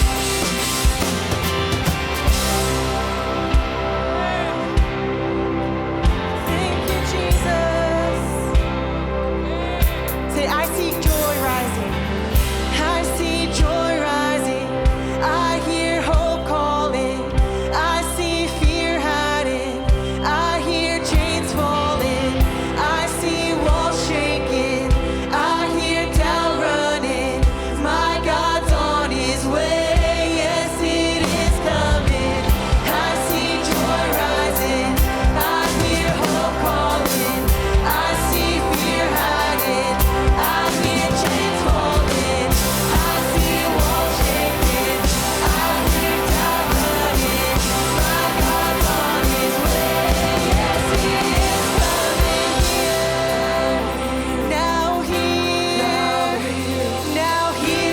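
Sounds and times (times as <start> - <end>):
drum beating steadily: 0.0 - 5.2, 9.8 - 12.9, 31.3 - 57.8
sustained keyboard chords: 0.0 - 57.9
worship band playing: 0.0 - 57.9
person singing: 2.5 - 57.9.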